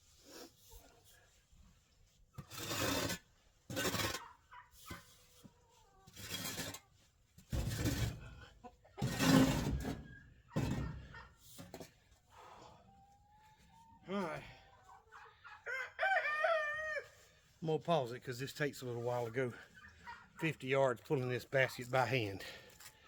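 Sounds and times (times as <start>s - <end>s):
shovel scraping through compost: 2.0s - 8.4s, 9.0s - 10.0s.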